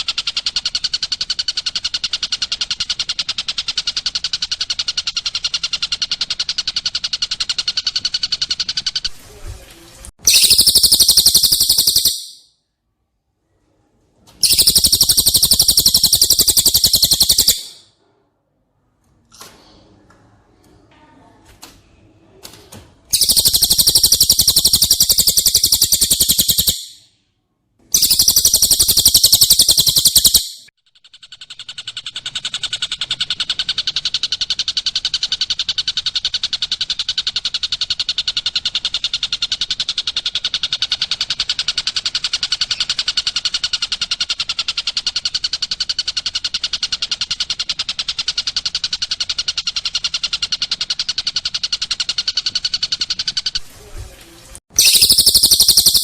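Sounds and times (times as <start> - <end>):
high-pitched rapid bird song: 10.3 - 12.5, 14.4 - 17.8, 23.1 - 27.0, 27.9 - 40.2, 54.7 - 56.0
pulsed fast bird trill: 10.3 - 12.5, 14.4 - 17.8, 23.1 - 27.0, 28.0 - 53.6, 54.7 - 56.0.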